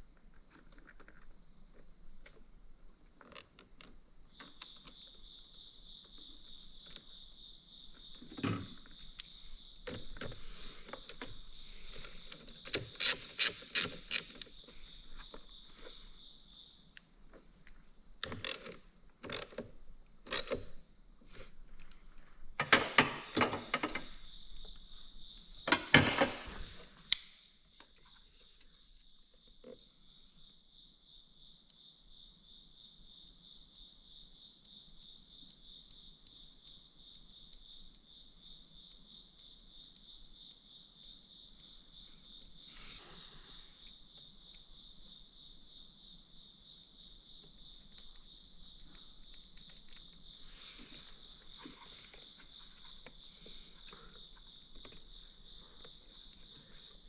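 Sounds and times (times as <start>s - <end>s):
crickets chirping: 0.0s - 57.0s
sharp clicks and knocks: 22.6s - 24.2s.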